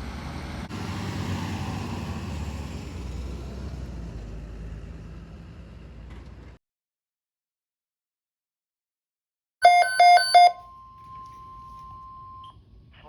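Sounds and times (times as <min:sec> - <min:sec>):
road noise: 0:00.0 - 0:06.6
vehicle engine rumble: 0:00.0 - 0:06.6.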